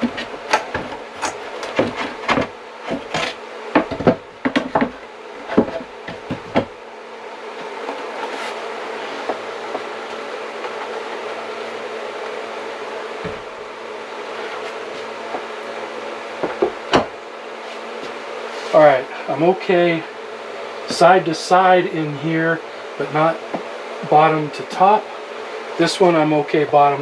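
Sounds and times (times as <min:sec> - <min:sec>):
wooden boards knocking: 0:00.0 - 0:06.8, 0:16.4 - 0:17.2
buzzing hum: 0:00.0 - 0:27.0.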